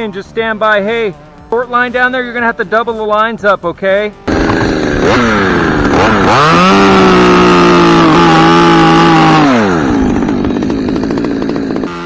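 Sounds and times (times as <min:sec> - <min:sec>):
chainsaw engine revving: 0:04.3 - 0:12.0.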